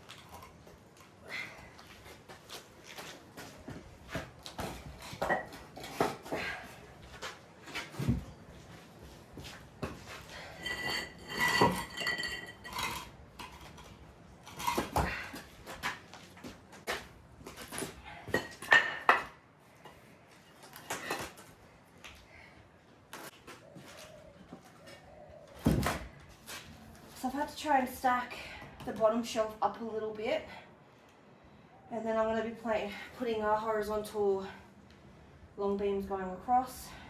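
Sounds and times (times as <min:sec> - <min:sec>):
hand tools knocking and clinking: 0:10.6 - 0:13.6.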